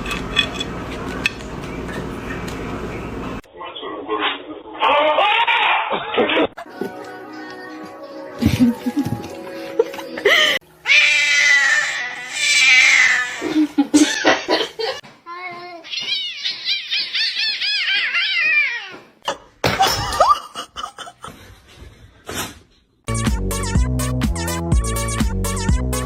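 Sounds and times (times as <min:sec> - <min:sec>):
person laughing: 0:04.8 - 0:07.0, 0:08.4 - 0:10.6, 0:13.4 - 0:15.0, 0:19.7 - 0:21.7
cat yowling: 0:10.8 - 0:13.6, 0:15.8 - 0:19.0.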